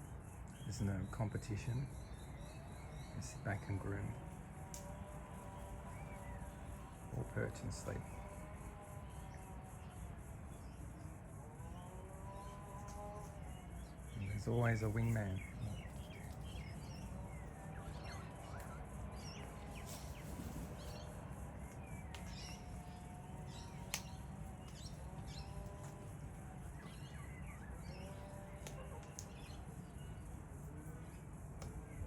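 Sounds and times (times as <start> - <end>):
birds chirping: 0.0 - 32.0
low outdoor background noise: 0.0 - 32.0
wavering whistled bird calls: 13.3 - 26.0.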